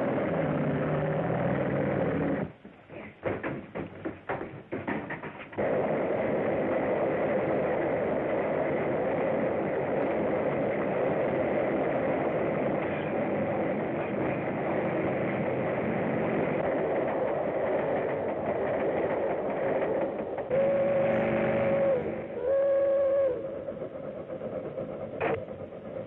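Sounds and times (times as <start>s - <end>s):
steam train running on track: 0.0s - 26.0s
train whistle blasts: 20.5s - 23.7s.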